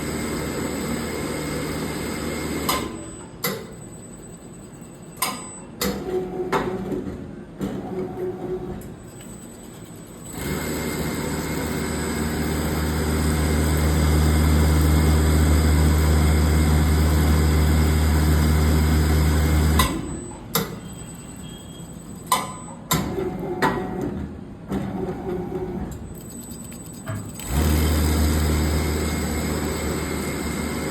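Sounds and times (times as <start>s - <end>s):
winding machine motor hum: 10.3s - 19.8s, 27.4s - 30.9s.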